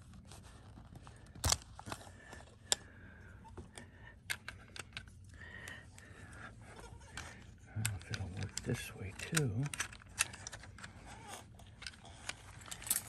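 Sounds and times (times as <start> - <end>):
plastic tripod parts clicking: 7.0 - 13.0.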